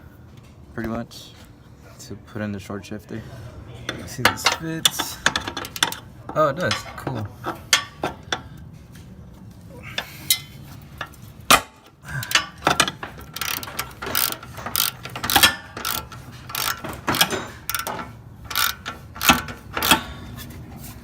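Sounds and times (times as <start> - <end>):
ratchet wrench clicking: 4.2 - 8.5, 10.0 - 20.4.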